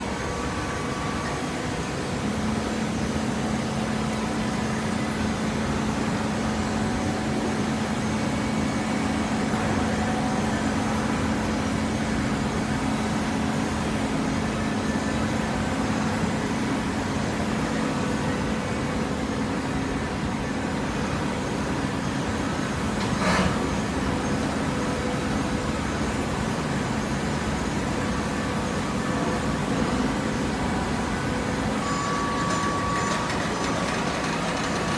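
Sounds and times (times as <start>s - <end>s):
baling press motor hum: 30.0s - 34.9s.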